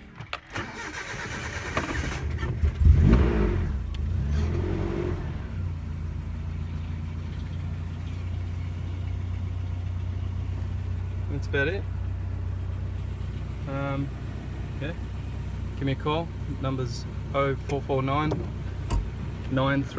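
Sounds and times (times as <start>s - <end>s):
starter motor cranking: 0.3s - 3.3s
engine revving and idling: 0.5s - 19.9s.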